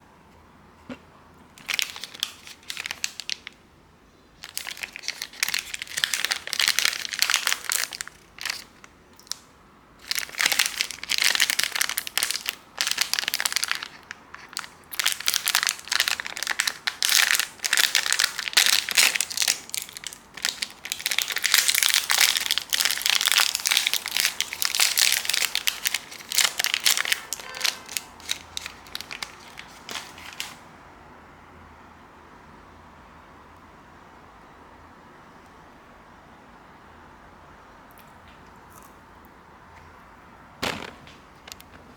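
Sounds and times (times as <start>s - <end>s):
plastic packaging crinkling: 1.6s - 3.6s, 4.4s - 30.6s, 40.6s - 41.9s.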